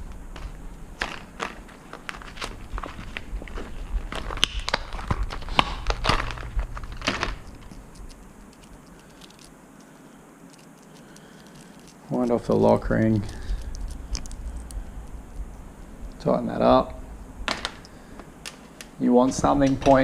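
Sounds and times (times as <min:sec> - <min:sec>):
plastic packet crinkling: 0:01.0 - 0:16.3.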